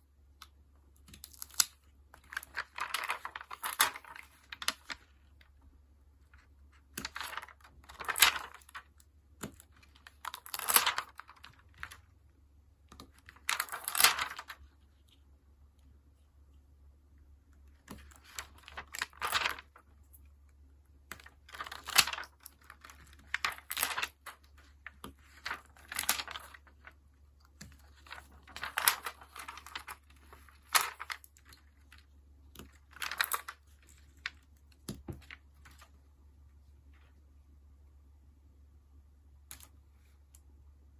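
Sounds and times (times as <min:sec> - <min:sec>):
paper rustling: 0:01.1 - 0:05.5, 0:06.3 - 0:12.1, 0:12.9 - 0:15.2, 0:17.7 - 0:20.3, 0:21.0 - 0:36.0.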